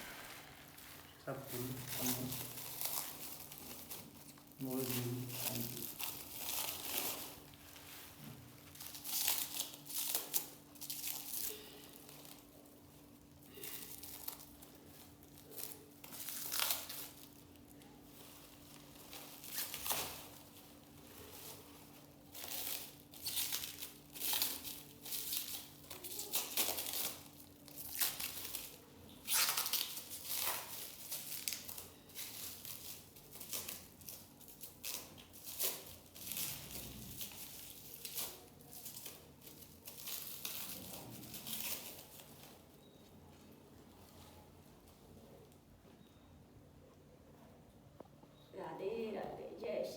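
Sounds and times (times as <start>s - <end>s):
plastic packaging crinkling: 0.0s - 45.1s.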